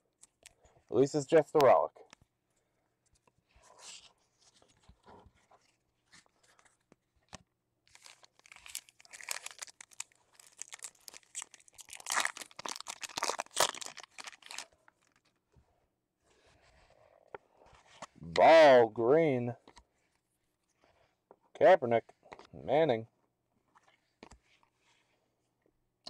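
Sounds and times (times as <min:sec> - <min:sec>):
wrapper tearing and crinkling: 0:07.9 - 0:15.3.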